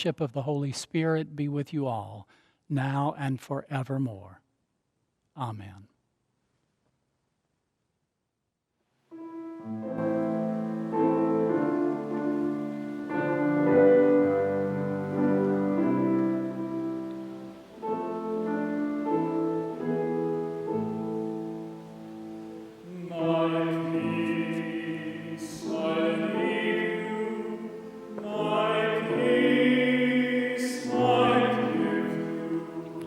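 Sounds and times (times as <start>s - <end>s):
keyboard chords: 9.1s - 33.0s
people singing: 22.8s - 33.0s.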